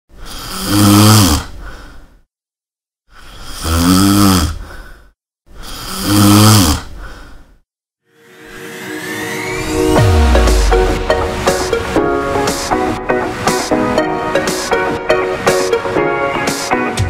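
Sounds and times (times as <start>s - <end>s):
person snoring: 0.2s - 1.6s, 3.2s - 4.8s, 5.6s - 7.0s
music: 8.1s - 17.0s.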